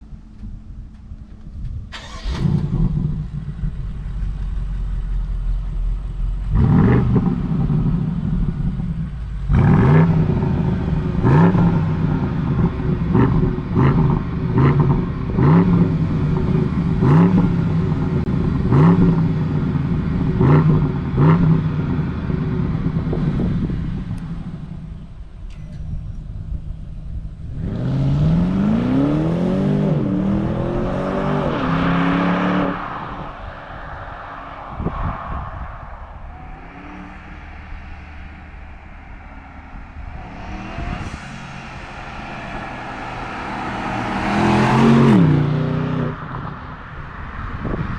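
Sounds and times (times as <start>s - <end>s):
car engine idling: 0.0s - 28.5s, 32.9s - 47.9s
engine throttle blips: 0.0s - 31.5s, 34.0s - 47.9s
car engine starting: 0.0s - 47.9s.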